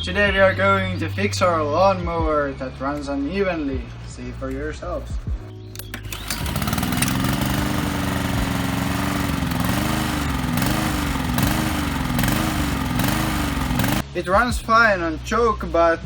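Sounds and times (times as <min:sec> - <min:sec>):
lawnmower engine surging: 0:05.8 - 0:14.1.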